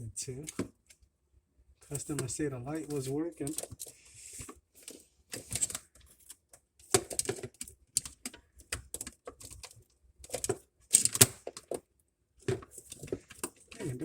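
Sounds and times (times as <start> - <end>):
clatter of parts and tools: 4.8 - 11.8.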